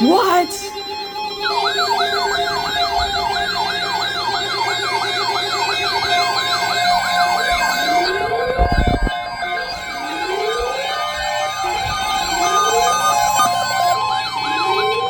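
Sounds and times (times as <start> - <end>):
electronic siren alarm yelping: 0.0 - 15.0.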